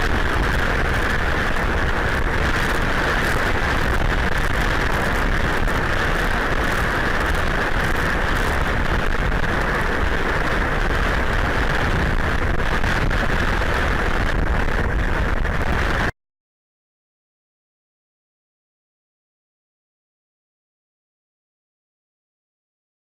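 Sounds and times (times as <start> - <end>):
heavy rain: 0.0 - 16.1
strong wind on microphone: 0.0 - 16.2.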